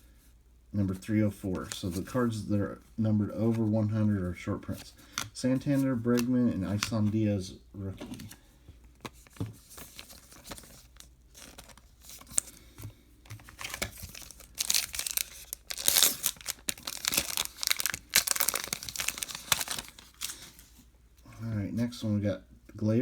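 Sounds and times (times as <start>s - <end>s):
foil wrapper tearing and crinkling: 10.0s - 12.6s, 13.5s - 20.6s.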